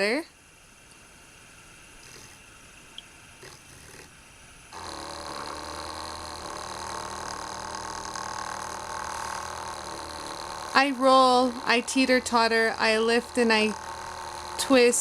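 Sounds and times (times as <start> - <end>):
polishing machine motor humming: 4.8 - 15.0.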